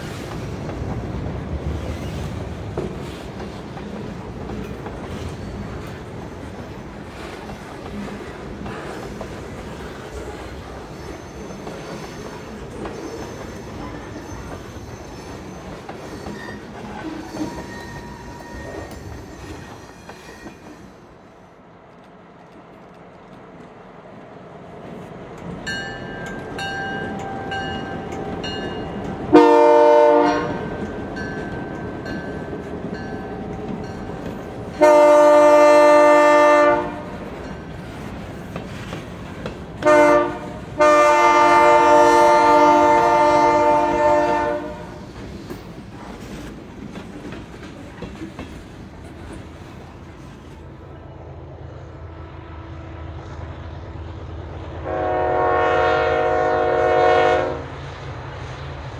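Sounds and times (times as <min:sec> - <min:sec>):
passing train rumble: 0:00.0 - 0:58.9
locomotive air horn blasts: 0:29.3 - 0:30.7, 0:34.8 - 0:37.3, 0:39.8 - 0:45.0, 0:54.8 - 0:57.7.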